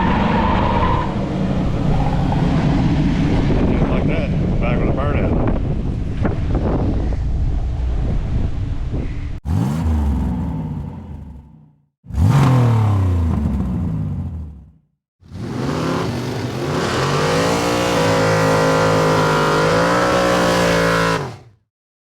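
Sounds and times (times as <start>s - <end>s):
car engine revving hard: 9.4s - 21.6s.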